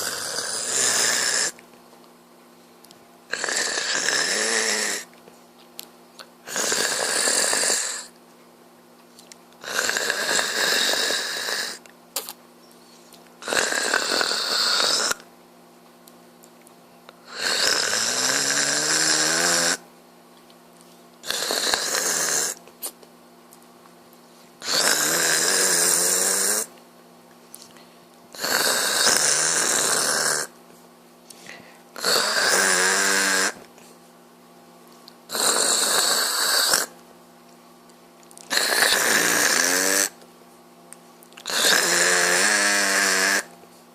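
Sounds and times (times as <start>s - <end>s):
man snoring loudly: 0.0s - 1.6s, 3.3s - 5.1s, 6.4s - 8.1s, 9.6s - 11.8s, 13.4s - 15.2s, 17.2s - 19.8s, 21.2s - 22.6s, 24.6s - 26.7s, 28.4s - 30.5s, 32.0s - 33.6s, 35.3s - 36.9s, 38.5s - 40.2s, 41.5s - 43.5s.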